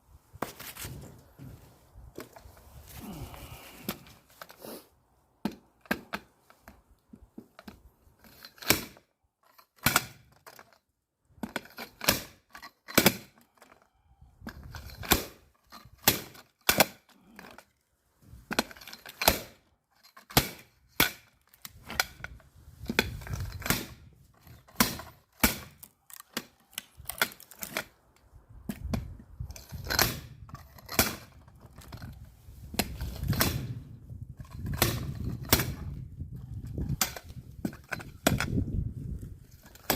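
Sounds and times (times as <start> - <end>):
axe splitting firewood: 5.4 - 17.8, 18.5 - 39.9.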